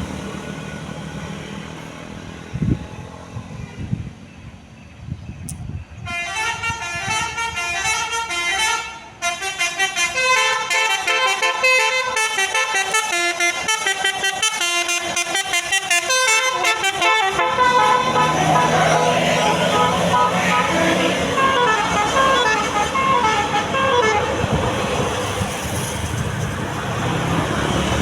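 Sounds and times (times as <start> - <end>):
low vehicle rumble: 0.0 - 28.0
bus horn playing a tune: 6.0 - 25.1.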